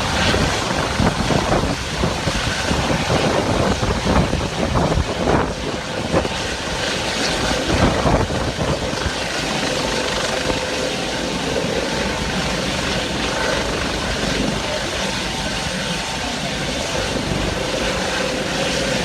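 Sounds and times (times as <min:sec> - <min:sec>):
helicopter rotor and engine: 0:00.0 - 0:19.0
wind gusting on microphone: 0:00.0 - 0:19.0.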